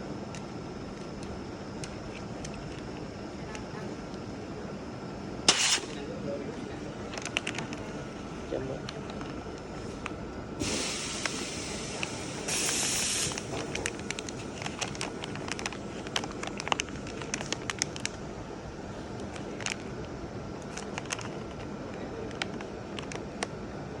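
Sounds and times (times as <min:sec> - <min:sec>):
compressed gas hissing: 0:05.5 - 0:06.0, 0:10.6 - 0:14.6
sharp clicks and crackles: 0:07.1 - 0:07.8, 0:12.0 - 0:18.2, 0:19.2 - 0:23.6.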